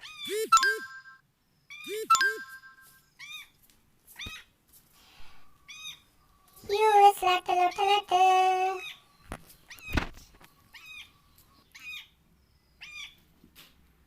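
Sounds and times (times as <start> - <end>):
high chirping squeaks: 0.0 - 1.0, 1.7 - 3.5, 5.7 - 6.1, 8.6 - 10.0, 10.7 - 12.2.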